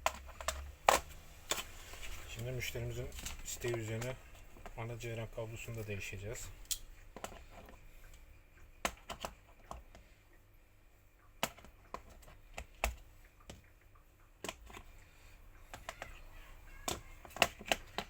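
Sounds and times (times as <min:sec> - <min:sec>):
hand tools clicking and tapping: 0:00.0 - 0:07.8, 0:15.6 - 0:18.0
plastic and metal parts handled: 0:00.0 - 0:08.2, 0:14.4 - 0:14.9, 0:15.6 - 0:18.0.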